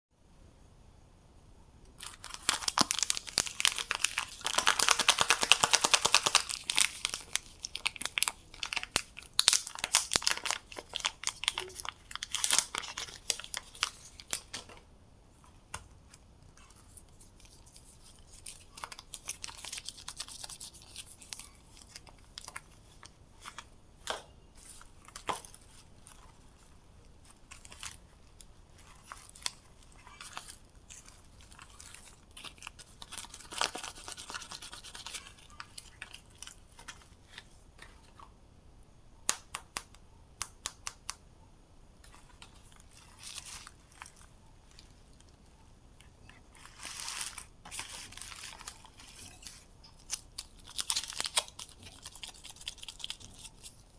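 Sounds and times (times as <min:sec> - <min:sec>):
wrappers tearing and crinkling: 0:02.0 - 0:14.7, 0:16.5 - 0:23.7, 0:24.6 - 0:37.5, 0:42.1 - 0:45.1, 0:46.5 - 0:53.8.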